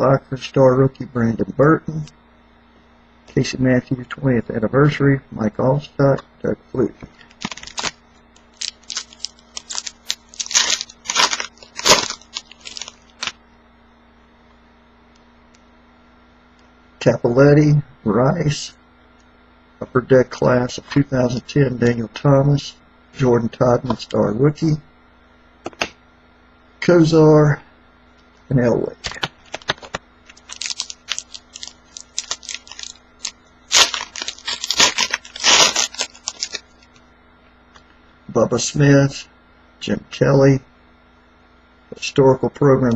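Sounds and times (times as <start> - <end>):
foil wrapper crinkling: 7.3 - 13.4, 29.2 - 37.0
cards flicking and tapping: 29.0 - 32.9.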